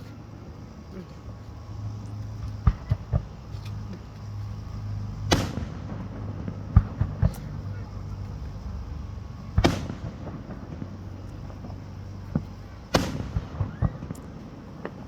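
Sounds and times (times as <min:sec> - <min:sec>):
small fireworks pops: 0:01.9 - 0:15.0
fireworks booms: 0:02.4 - 0:03.8, 0:04.6 - 0:15.0.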